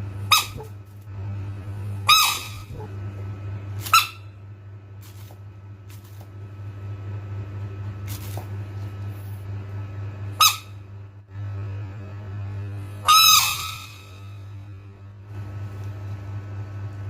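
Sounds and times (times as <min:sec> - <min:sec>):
steady low hum: 0:00.0 - 0:17.0
frog squeaky calls: 0:02.1 - 0:02.8, 0:10.4 - 0:10.8, 0:13.0 - 0:14.3.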